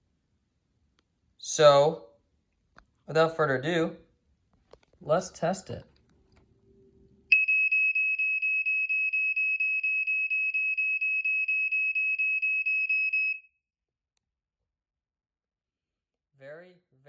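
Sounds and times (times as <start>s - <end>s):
smoke alarm beeping: 7.3s - 13.5s.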